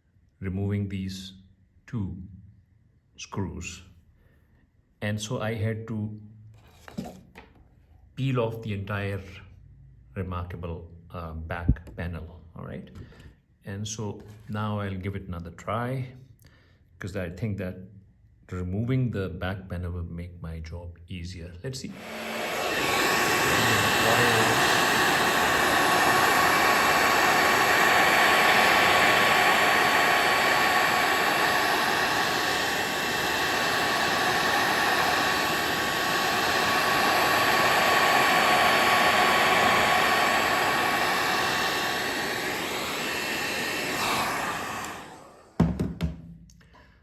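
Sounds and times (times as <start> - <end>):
hot-air blower running: 21.9 - 46.2.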